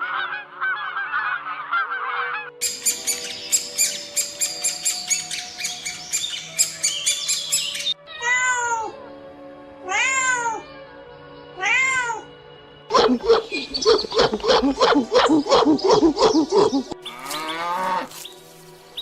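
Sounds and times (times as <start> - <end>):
background music: 0.0 - 19.0
cat meowing: 9.9 - 10.6, 11.6 - 12.3.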